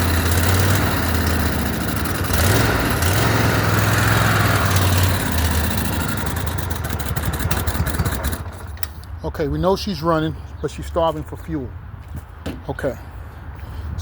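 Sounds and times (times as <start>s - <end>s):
mower engine running unevenly: 0.0s - 9.0s.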